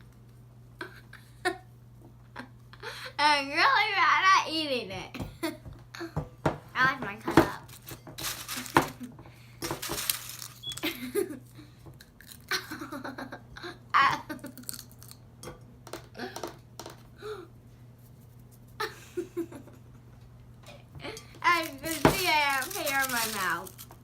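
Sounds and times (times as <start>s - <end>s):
child giggling and laughing: 12.5s - 14.6s.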